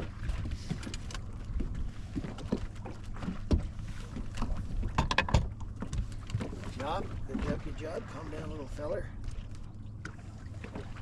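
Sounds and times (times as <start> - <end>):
fish flopping in a boat: 0.0 - 11.0
low hum: 0.0 - 11.0.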